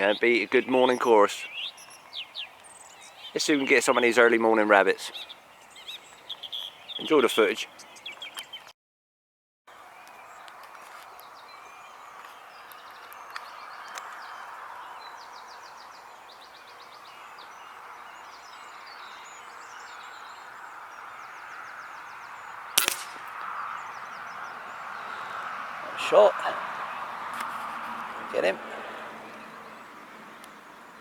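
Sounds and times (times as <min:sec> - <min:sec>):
birds singing: 0:00.0 - 0:08.7, 0:09.7 - 0:31.0
air rifle shot: 0:22.8 - 0:23.4.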